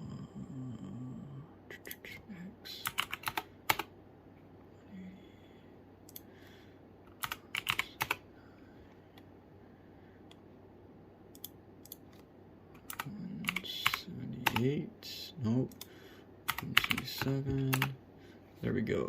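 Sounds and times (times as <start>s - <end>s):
computer keyboard typing: 2.8s - 3.9s, 7.1s - 8.2s, 11.4s - 12.2s, 12.8s - 14.8s, 16.5s - 18.0s.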